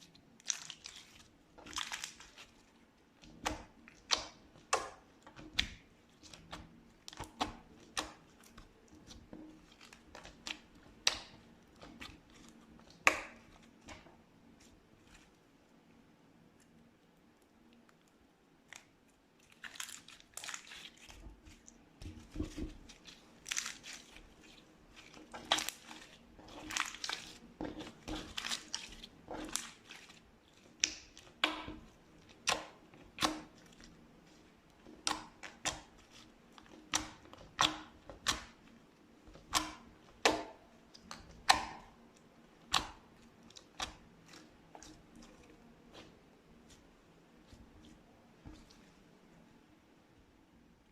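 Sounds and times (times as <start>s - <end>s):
slime crackling and popping: 0.4s - 2.6s, 18.7s - 33.9s, 39.4s - 42.0s.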